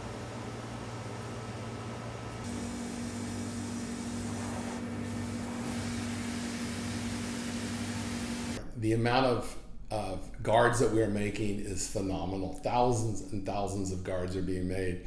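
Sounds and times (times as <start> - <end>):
workshop machinery hum: 0.0 - 8.8.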